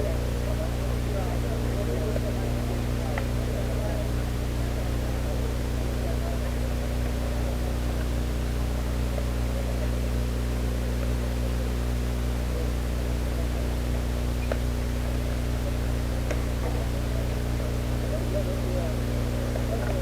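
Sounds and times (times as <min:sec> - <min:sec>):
low hum with hiss: 0:00.0 - 0:20.0
faint clicks: 0:03.1 - 0:03.4, 0:13.5 - 0:18.2.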